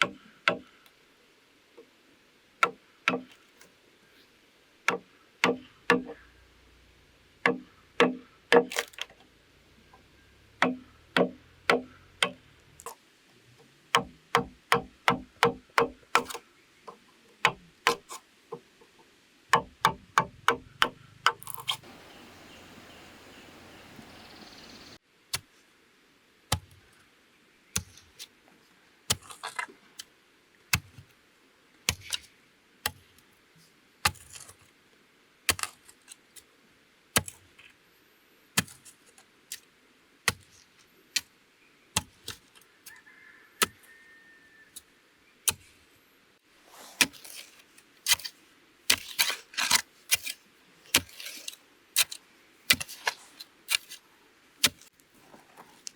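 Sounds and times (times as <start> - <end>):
hand tool knocking on bamboo: 4.9 - 6.2, 7.4 - 8.7, 10.6 - 12.4, 14.0 - 16.4, 17.5 - 18.0, 19.5 - 21.5
steady hiss: 21.8 - 25.9.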